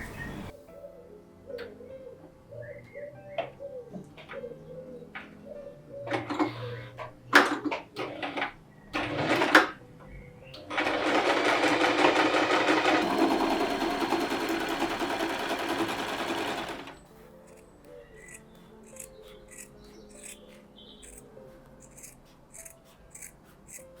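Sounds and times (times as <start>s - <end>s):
small electric motor rattling: 21.8s - 23.8s.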